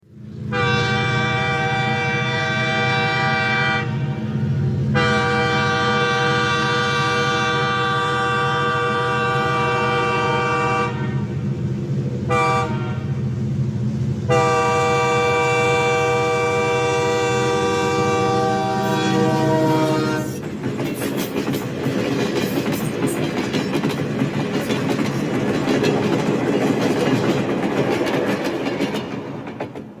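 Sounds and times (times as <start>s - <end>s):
train air horn blasts: 0.5s - 11.4s, 12.3s - 13.2s, 14.3s - 20.4s
train wheels clattering on rails: 19.0s - 30.0s.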